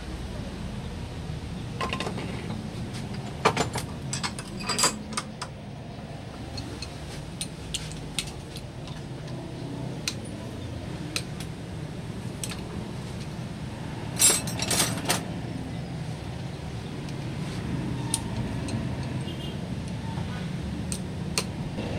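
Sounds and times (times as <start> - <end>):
metallic clinks and taps: 3.4 - 5.6, 14.2 - 15.2.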